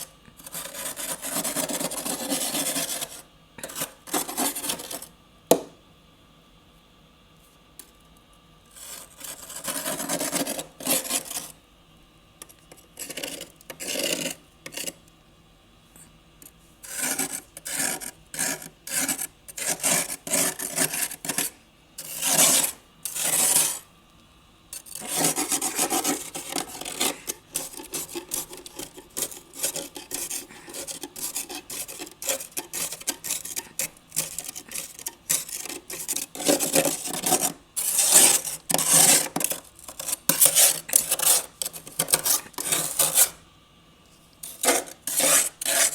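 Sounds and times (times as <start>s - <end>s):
scraping frost: 0.0s - 5.1s, 8.8s - 11.5s, 16.8s - 23.9s, 24.8s - 43.4s, 44.4s - 45.9s.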